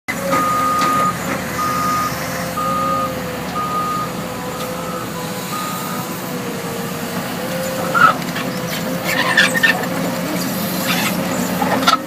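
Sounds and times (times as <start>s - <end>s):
excavator travel alarm beeping: 0.1s - 8.2s
engine hum: 0.1s - 12.0s.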